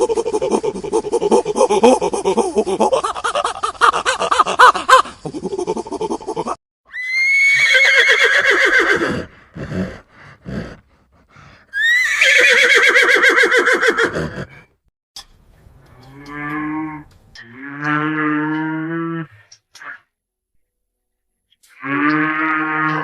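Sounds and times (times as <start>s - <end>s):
cow mooing: 16.0s - 19.3s, 21.8s - 23.0s.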